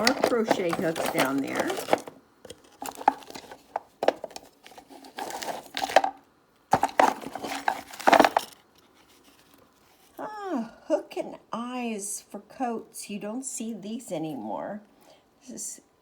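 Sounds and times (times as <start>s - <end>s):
small items rattling in drawer: 0.0s - 10.1s.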